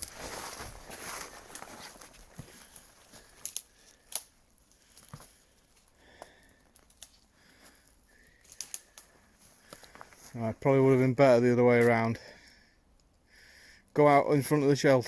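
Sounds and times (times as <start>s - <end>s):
dry twigs cracking and snapping: 0.0s - 10.3s.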